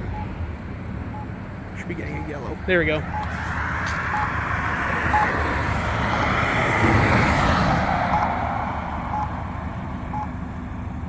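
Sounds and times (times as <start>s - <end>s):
road traffic passing: 0.0s - 11.0s
crosswalk button beeps: 1.1s - 1.3s, 2.0s - 3.4s, 4.1s - 4.4s, 5.1s - 5.4s, 8.1s - 8.3s, 9.1s - 9.4s, 10.1s - 10.3s.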